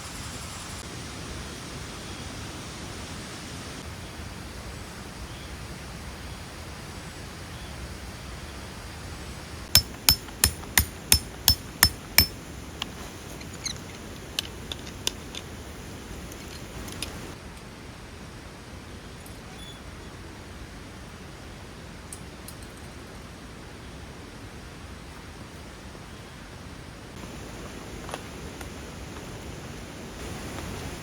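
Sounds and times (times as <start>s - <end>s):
steady rushing hiss: 0.0s - 18.8s, 26.7s - 31.0s
hammer strikes: 9.8s - 12.4s.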